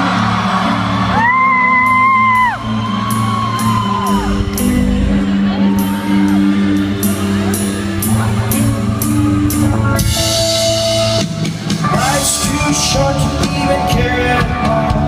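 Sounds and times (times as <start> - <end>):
loud whoop: 0.0 - 4.9
crowd calls: 0.0 - 12.8
rock band playing live: 0.0 - 15.0.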